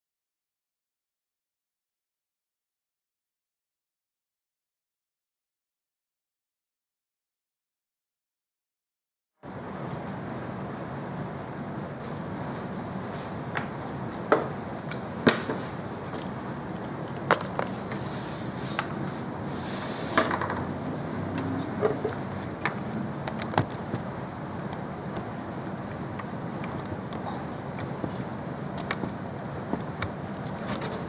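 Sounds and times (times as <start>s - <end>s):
steady background hum: 9.4s - 31.0s.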